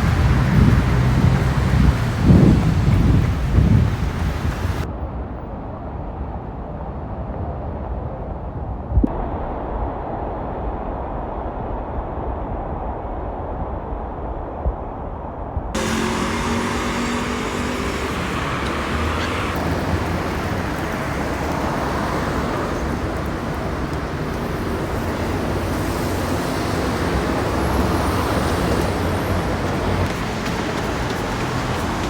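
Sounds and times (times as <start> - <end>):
road traffic noise: 0.0 - 4.9, 15.8 - 32.0.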